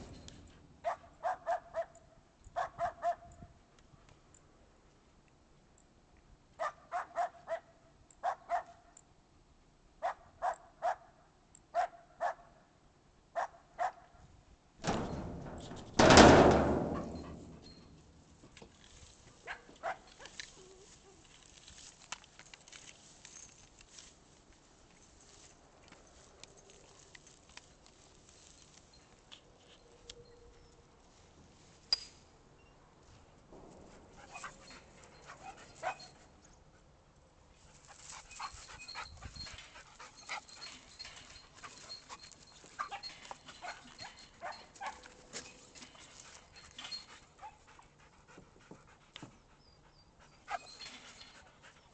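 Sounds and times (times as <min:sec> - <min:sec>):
small dog barking: 0:00.8 - 0:01.9, 0:02.6 - 0:03.3, 0:06.6 - 0:08.8, 0:10.0 - 0:11.1, 0:11.8 - 0:12.5, 0:13.4 - 0:14.0
high squeak: 0:38.2 - 0:47.2.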